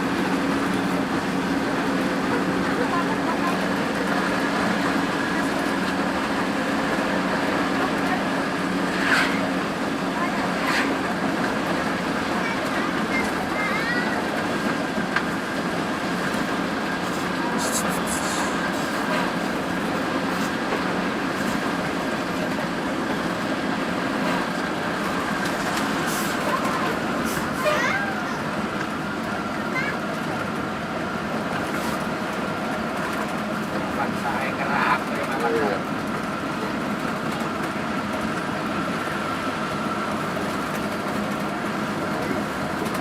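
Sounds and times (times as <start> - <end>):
bus engine hum: 0.0 - 43.0
road and cabin noise: 0.0 - 43.0.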